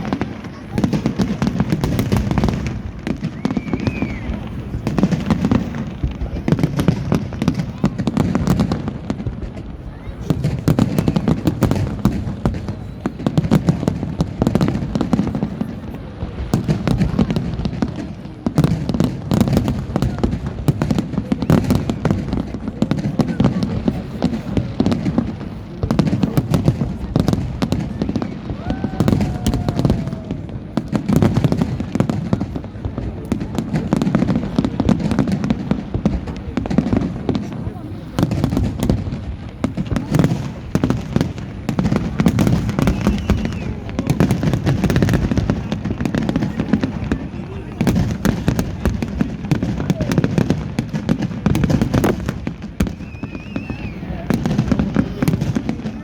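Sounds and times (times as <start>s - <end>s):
crowd murmur: 0.0s - 56.0s
fireworks bangs and crackles: 0.0s - 56.0s
long firework whistle: 1.9s - 5.5s, 28.0s - 30.6s, 42.2s - 45.1s, 52.8s - 55.4s
wavering whistle: 53.0s - 54.0s.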